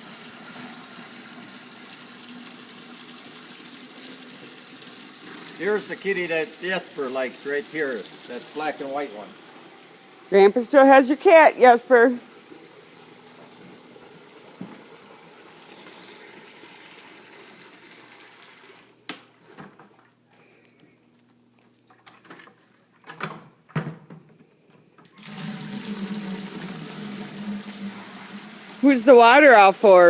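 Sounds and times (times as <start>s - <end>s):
water running from a hose: 0.0s - 19.1s, 25.2s - 30.0s.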